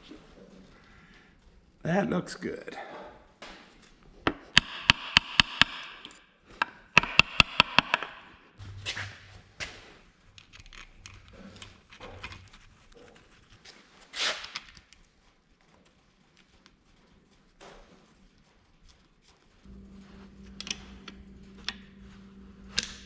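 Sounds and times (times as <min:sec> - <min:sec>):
tools scraping and knocking on metal: 0:19.7 - 0:23.0.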